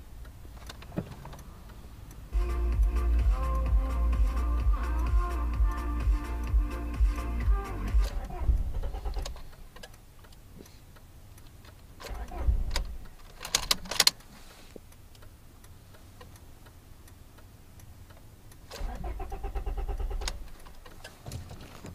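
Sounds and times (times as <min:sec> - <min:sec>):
sharp clicks: 0:07.2 - 0:14.3
starter cranking engine: 0:07.4 - 0:09.8, 0:18.7 - 0:21.2.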